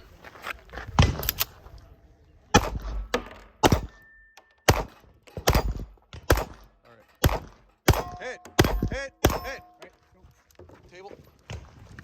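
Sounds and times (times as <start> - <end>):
pistol shots: 2.5 - 9.8.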